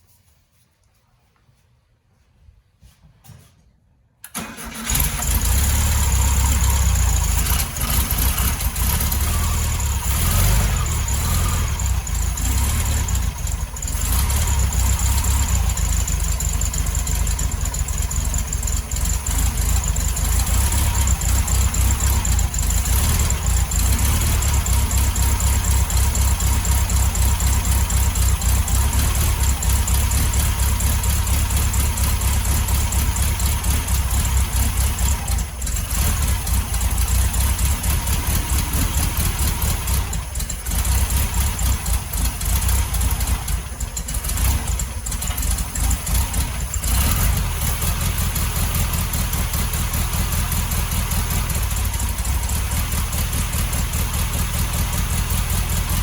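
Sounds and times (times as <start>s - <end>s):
car engine idling: 4.3s - 56.0s.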